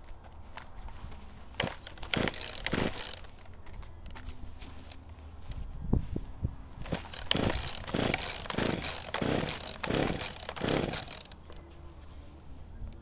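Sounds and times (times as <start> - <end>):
chainsaw revving: 1.6 - 3.3, 6.8 - 11.4.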